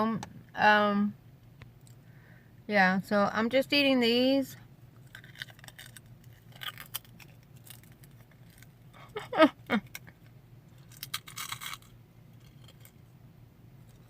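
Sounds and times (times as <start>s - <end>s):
chip bag crinkling: 5.0s - 13.0s
potato chips crunching: 5.0s - 13.0s.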